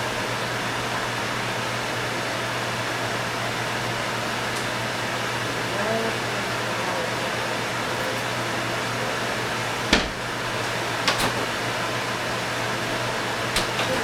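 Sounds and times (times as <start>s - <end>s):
fan-like whooshing with hum: 0.0s - 14.0s
sharp knocks: 9.9s - 10.2s.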